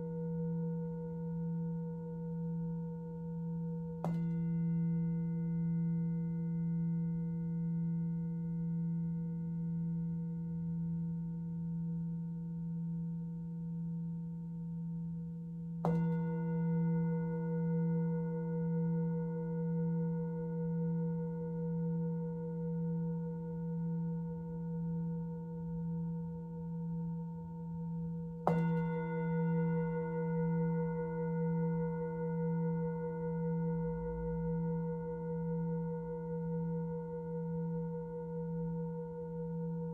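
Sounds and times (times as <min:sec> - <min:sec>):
singing bowl ringing: 0:00.0 - 0:12.1, 0:15.8 - 0:39.9
singing bowl strike: 0:02.3 - 0:08.0, 0:15.8 - 0:19.8, 0:27.7 - 0:33.8.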